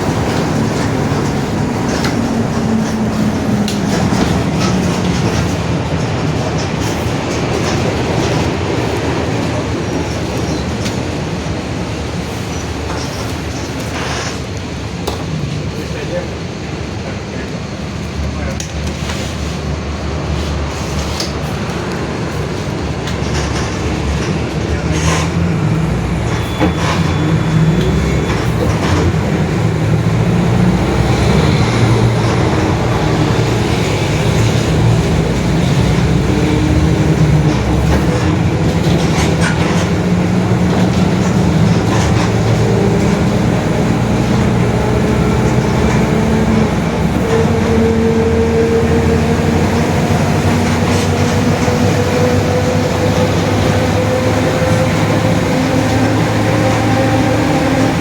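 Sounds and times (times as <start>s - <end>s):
bus diesel engine drone: 0.0s - 58.0s.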